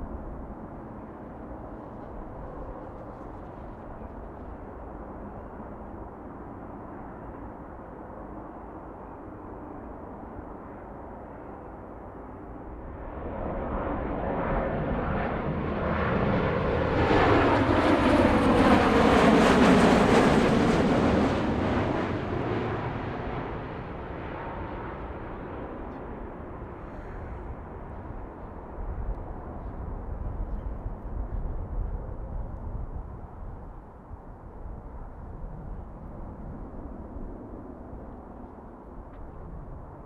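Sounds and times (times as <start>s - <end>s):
jet airliner passing: 11.4s - 40.0s.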